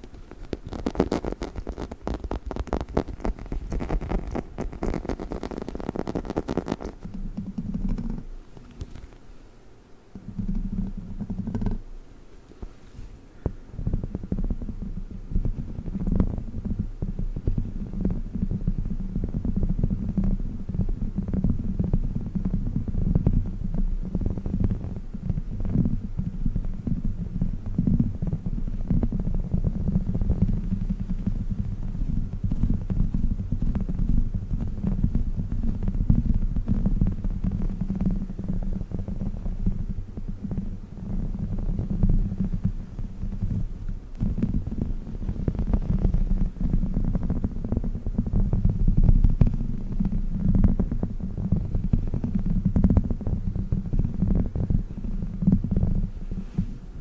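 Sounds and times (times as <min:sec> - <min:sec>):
dog toy rubbed near microphone: 0:29.0 - 0:56.9.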